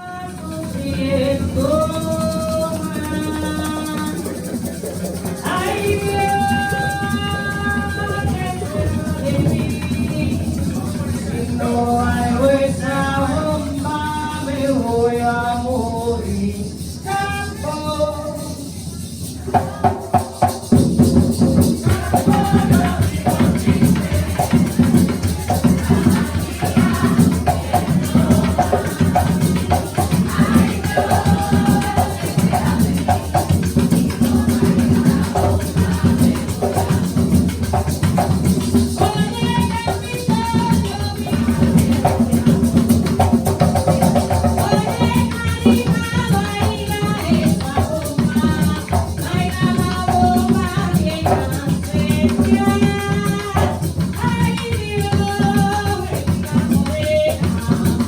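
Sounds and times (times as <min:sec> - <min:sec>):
percussion rhythm: 0:00.0 - 0:58.0
person singing: 0:21.8 - 0:37.3.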